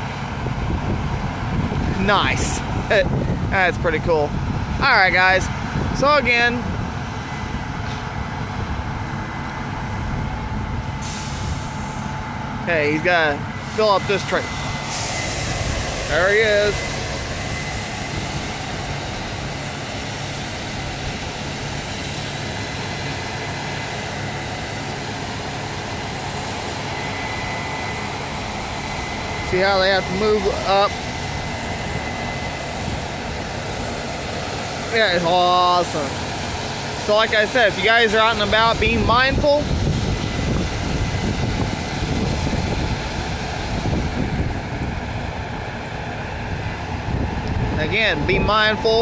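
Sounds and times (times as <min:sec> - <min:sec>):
combine harvester engine drone: 0:00.0 - 0:49.0
wind buffeting microphone: 0:00.0 - 0:49.0
faint high whine: 0:09.9 - 0:43.7.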